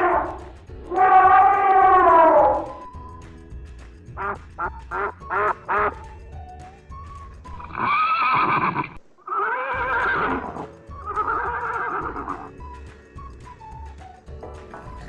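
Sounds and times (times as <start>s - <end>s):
horse whinnying: 0.0s - 2.9s, 7.5s - 12.5s
quiet background music: 0.0s - 15.0s.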